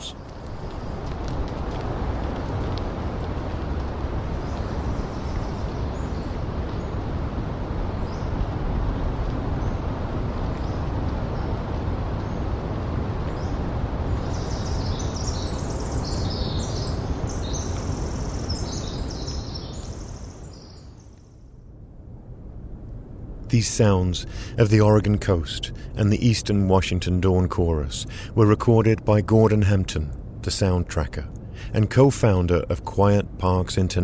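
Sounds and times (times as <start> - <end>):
distant ocean surf: 0.0 - 18.6, 21.9 - 34.0
breeze through forest: 0.0 - 34.0
small birds chirping: 9.4 - 21.6.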